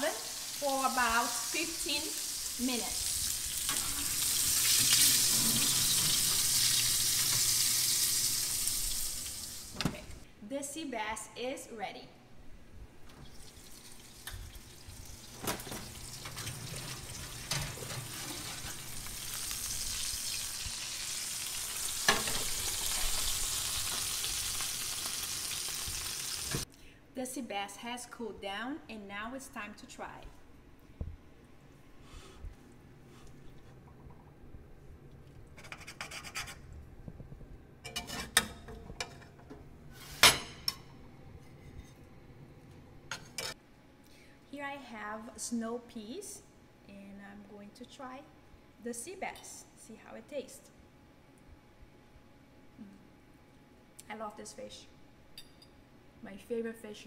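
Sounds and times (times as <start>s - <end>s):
hot oil sizzling in a pan: 0.0s - 9.8s, 13.3s - 26.7s
cutlery scraping and clinking on plate: 37.8s - 40.9s.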